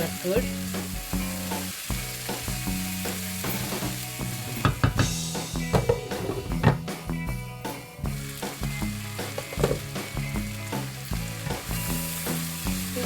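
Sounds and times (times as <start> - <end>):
light sizzle: 0.0 - 6.7, 7.7 - 13.0
background music: 0.0 - 13.0
spatula scraping frying pan: 5.8 - 6.7.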